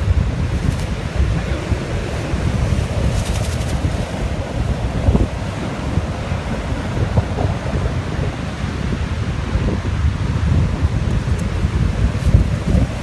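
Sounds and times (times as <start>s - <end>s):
strong wind buffeting microphone: 0.0s - 13.0s
surf washing on beach: 0.0s - 13.0s.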